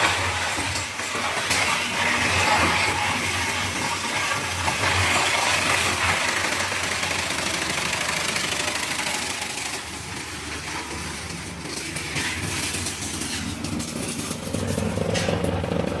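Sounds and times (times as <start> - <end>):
crusher machine running: 0.0 - 16.0.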